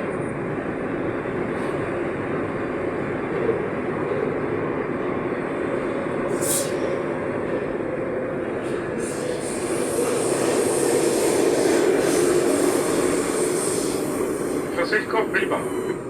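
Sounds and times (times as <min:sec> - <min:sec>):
train rumbling: 0:00.0 - 0:16.0
brief hiss: 0:06.3 - 0:07.0.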